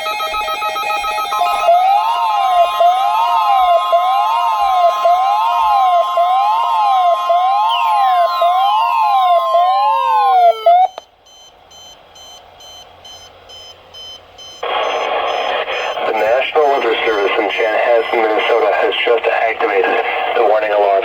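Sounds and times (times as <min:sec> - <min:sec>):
warbling siren: 0:00.0 - 0:11.0
steady warning alarm tone: 0:00.0 - 0:21.0
faint high beeps: 0:10.8 - 0:18.5.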